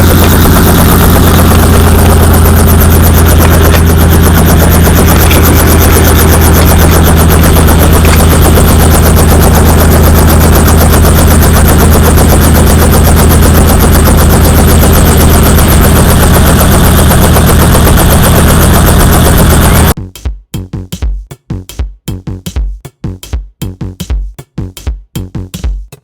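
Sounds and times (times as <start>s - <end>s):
helicopter engine drone: 0.0s - 20.0s
rotor blades chopping: 0.0s - 20.0s.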